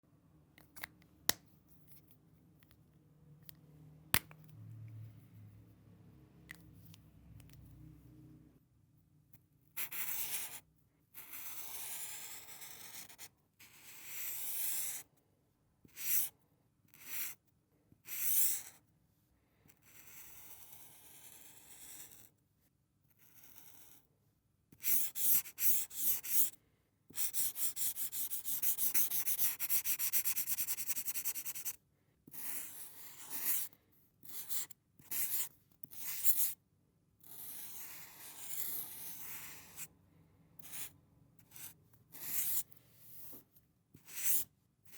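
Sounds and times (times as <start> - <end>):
felt tip scratching paper: 27.2 - 33.7.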